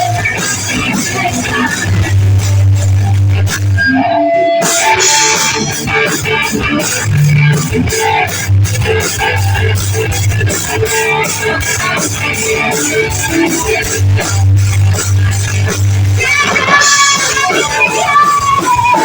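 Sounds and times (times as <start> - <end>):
rock band playing: 0.0 - 19.0
cymbal beat: 4.6 - 6.2.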